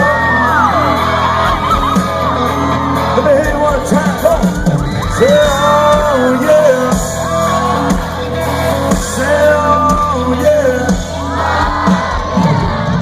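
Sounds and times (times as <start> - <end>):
bass guitar: 0.0 - 13.0
drum beat: 3.3 - 13.0
lead vocal singing: 4.8 - 13.0.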